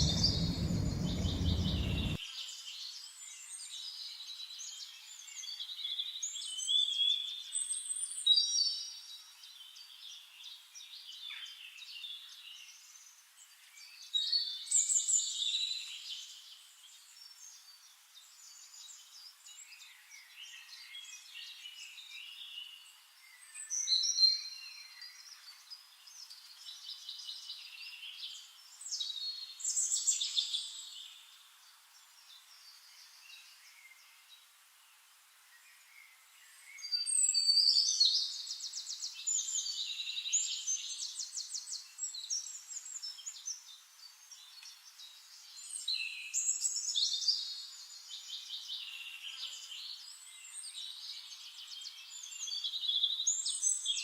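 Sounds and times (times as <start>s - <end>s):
small birds warbling and trilling: 0.0s - 2.2s.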